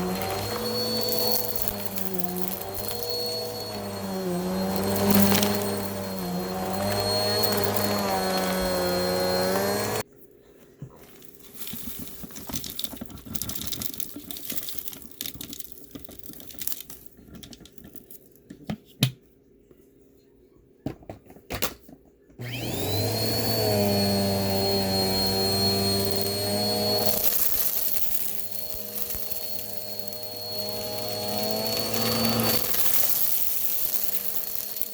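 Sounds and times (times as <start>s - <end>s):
rustling: 0.0s - 10.0s, 10.6s - 18.5s, 22.4s - 34.9s
vacuum cleaner whine: 0.0s - 10.0s, 22.4s - 34.9s.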